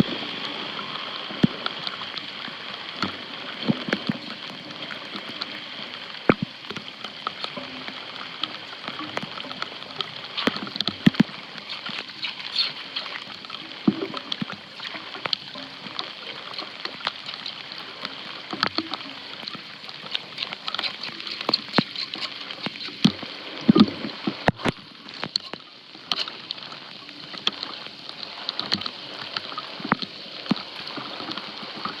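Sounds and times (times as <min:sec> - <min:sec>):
water sloshing through a drain: 0:00.0 - 0:32.0
splashes and knocks: 0:06.2 - 0:26.4.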